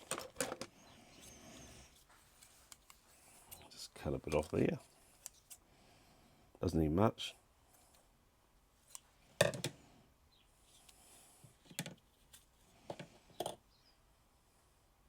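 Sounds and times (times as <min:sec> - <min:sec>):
plastic parts clicking and tapping: 0:00.0 - 0:00.8, 0:09.4 - 0:09.8, 0:11.6 - 0:12.0, 0:12.9 - 0:13.6.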